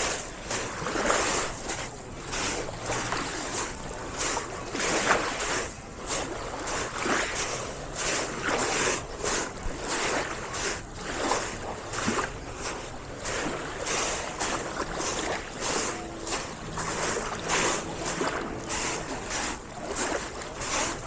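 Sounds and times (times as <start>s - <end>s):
footsteps crunching on stones: 1.7s - 4.5s, 11.5s - 21.0s.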